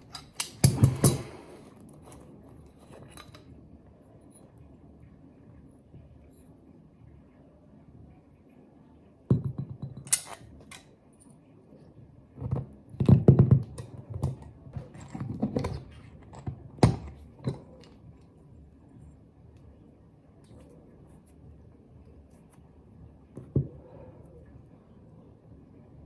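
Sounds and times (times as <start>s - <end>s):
objects being handled: 0.0s - 3.6s, 12.3s - 19.2s.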